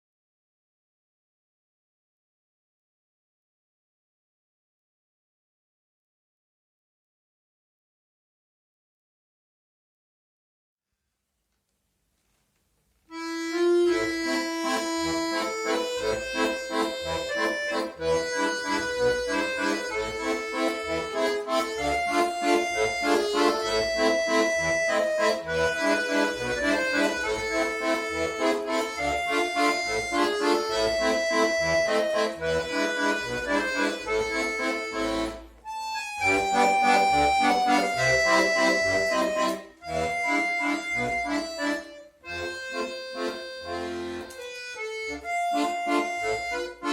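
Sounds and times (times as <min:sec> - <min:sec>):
accordion playing a tune: 0:13.1 - 0:46.9.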